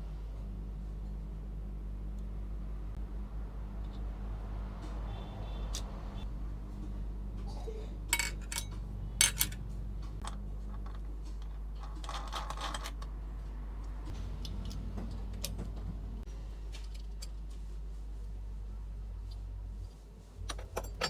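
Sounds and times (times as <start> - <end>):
steady low hum: 0.0 - 20.9
small hard parts clinking: 8.1 - 13.1
rattling clatter: 10.2 - 13.1.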